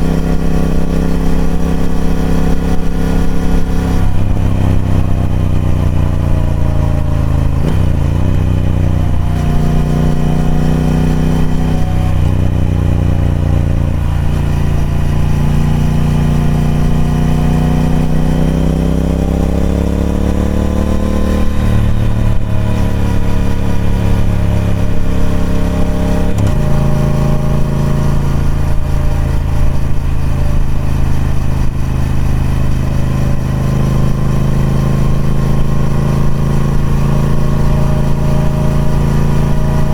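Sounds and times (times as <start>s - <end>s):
motorcycle engine changing gear: 0.0s - 39.9s.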